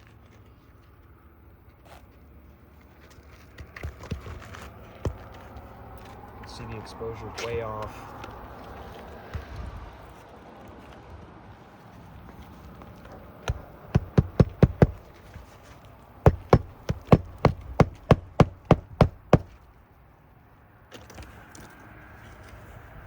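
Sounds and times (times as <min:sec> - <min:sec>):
hammer driving nails into shingle: 0:13.4 - 0:15.1, 0:16.3 - 0:19.6.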